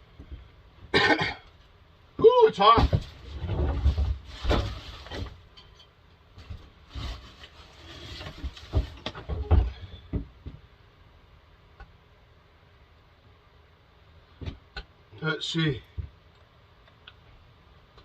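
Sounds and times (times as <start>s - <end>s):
knocks and clunks of handling: 2.8s - 7.2s, 7.9s - 10.7s.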